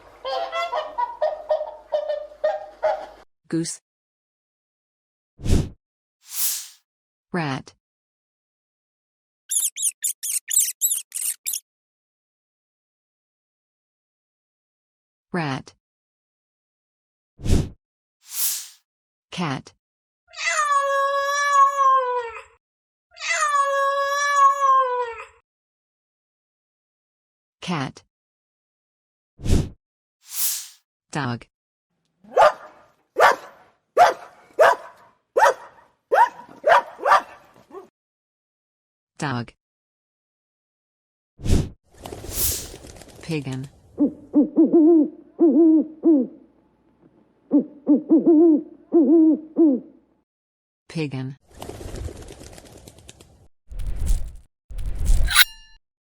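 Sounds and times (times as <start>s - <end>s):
pigeon cooing: 44.0s - 46.5s, 47.5s - 50.0s.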